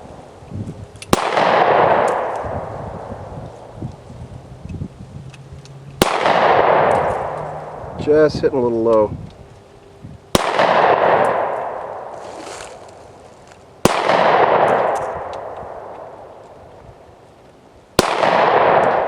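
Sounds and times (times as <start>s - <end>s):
pistol shots: 1.1s - 2.6s, 6.0s - 7.5s, 10.3s - 12.1s, 13.8s - 16.2s, 18.0s - 19.0s
rolling echo of gunshots: 1.1s - 3.1s, 6.0s - 7.4s, 10.3s - 12.1s, 13.8s - 16.3s, 18.0s - 19.0s.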